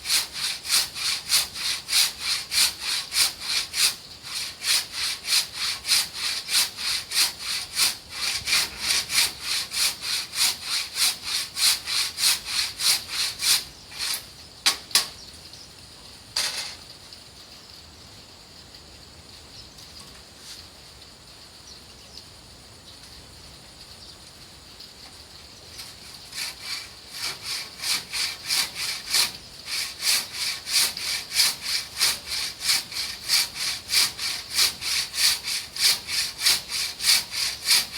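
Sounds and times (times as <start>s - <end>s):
hand saw cutting wood: 0.0s - 15.1s, 25.8s - 37.9s.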